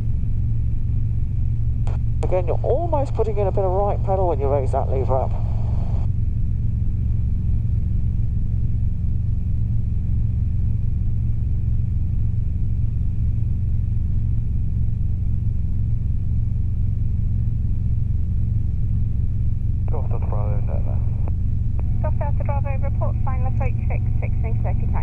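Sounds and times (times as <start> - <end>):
faint high whine: 0.0 - 25.0
helicopter engine and rotors: 1.5 - 11.6, 19.4 - 25.0.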